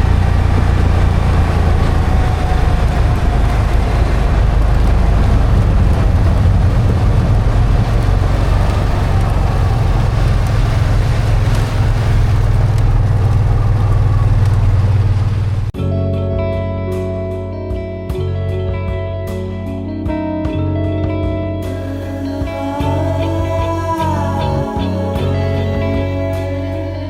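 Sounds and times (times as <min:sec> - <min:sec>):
vehicle engine rumbling: 0:00.0 - 0:15.8, 0:21.6 - 0:27.0.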